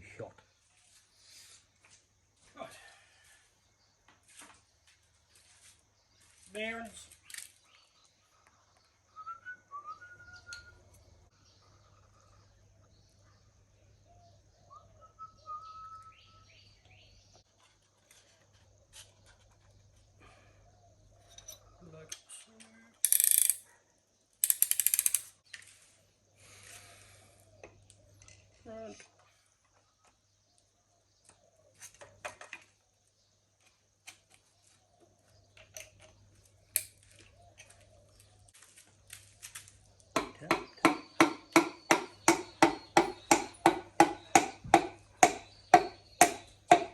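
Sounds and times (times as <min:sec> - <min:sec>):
faint birdsong: 0:00.0 - 0:46.9
metal engine parts clicking: 0:23.0 - 0:23.6, 0:24.4 - 0:25.3.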